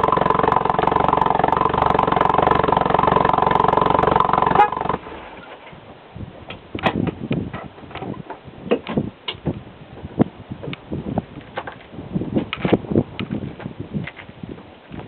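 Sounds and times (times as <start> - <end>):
car engine running: 0.0 - 5.4.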